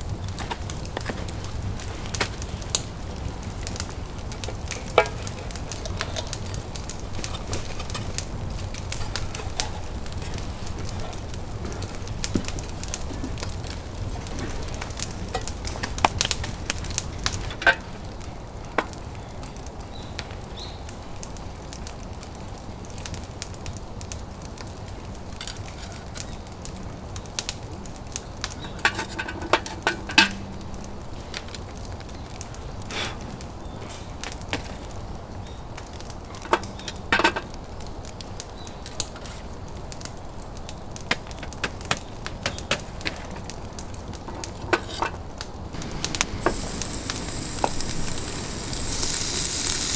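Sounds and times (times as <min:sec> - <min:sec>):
wood cracking and clicking: 0:00.0 - 0:19.0, 0:27.4 - 0:32.6, 0:33.9 - 0:49.9.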